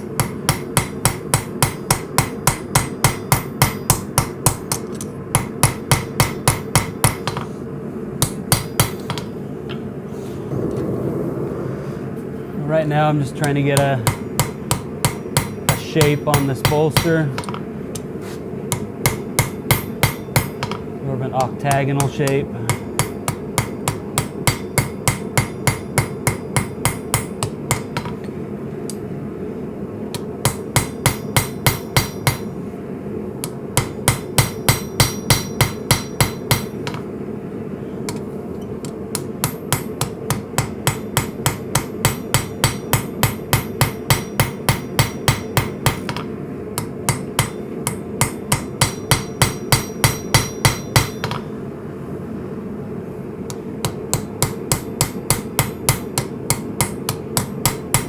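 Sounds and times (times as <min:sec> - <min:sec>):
low rushing noise: 0:10.5 - 0:13.4.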